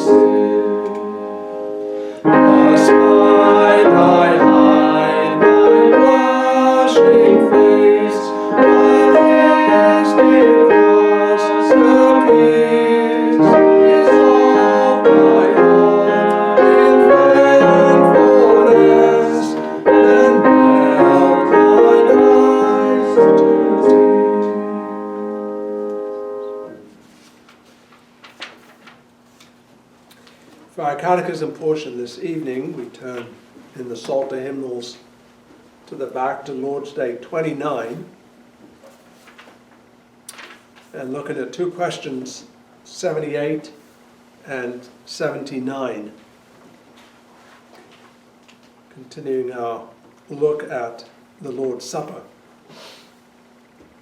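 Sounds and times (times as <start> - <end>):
piano playing a hymn: 0.0 - 27.0.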